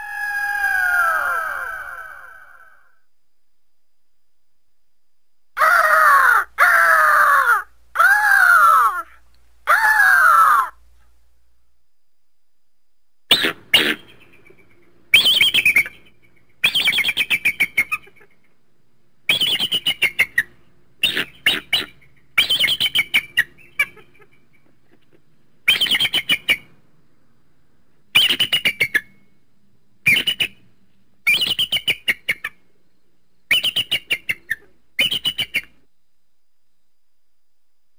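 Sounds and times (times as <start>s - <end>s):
eagle screaming: 0.0s - 3.0s, 5.6s - 10.8s.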